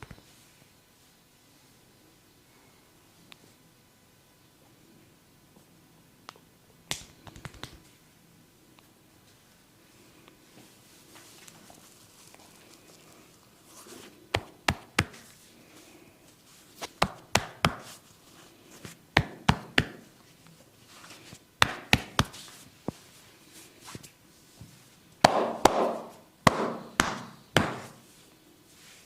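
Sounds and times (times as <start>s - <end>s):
hands slapping body: 6.9s - 7.8s, 14.3s - 15.2s, 16.8s - 18.0s, 18.8s - 20.0s, 21.6s - 22.4s, 25.2s - 28.0s
hands rubbing skin: 11.0s - 24.6s.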